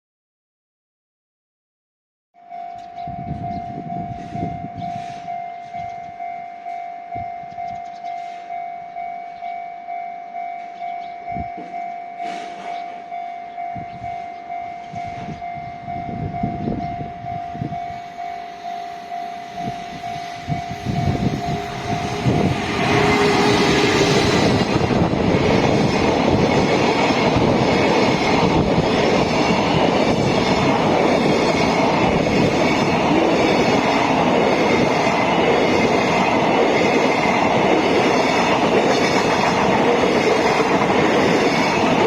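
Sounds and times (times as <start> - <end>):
freight train rumble: 3.0 - 9.1, 11.2 - 42.0
level crossing bell ringing: 17.2 - 23.1.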